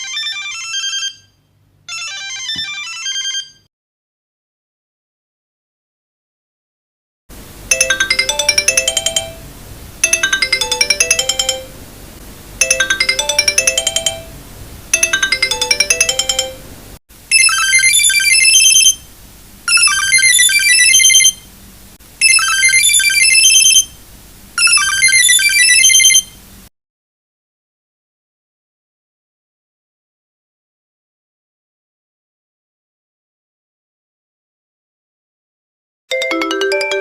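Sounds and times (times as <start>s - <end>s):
electronic ringtone melody: 0.0s - 3.7s, 7.7s - 11.8s, 12.6s - 16.7s, 17.3s - 19.0s, 19.7s - 21.4s, 22.2s - 23.8s, 24.6s - 26.2s, 36.1s - 37.0s.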